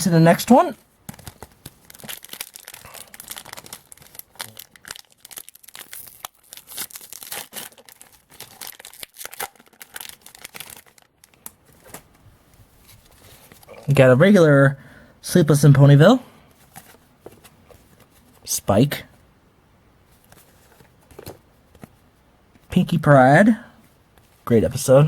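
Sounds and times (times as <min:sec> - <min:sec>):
wrapper tearing and crinkling: 0:01.1 - 0:12.0.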